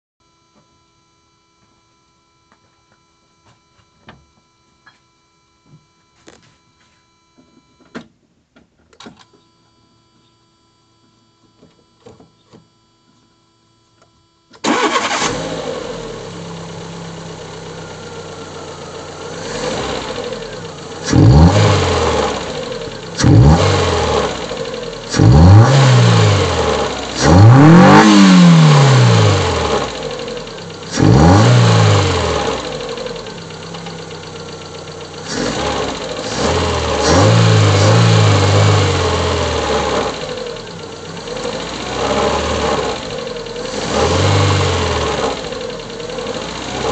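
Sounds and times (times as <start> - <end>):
car engine starting: 14.6 - 46.9
engine revving: 14.7 - 46.9
rough car engine idling: 15.8 - 46.9.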